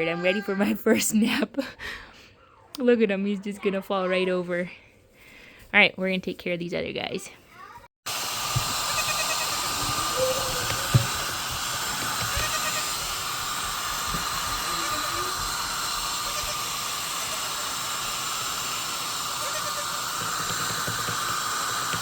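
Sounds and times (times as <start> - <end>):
hair dryer blowing with whine: 8.1 - 22.0.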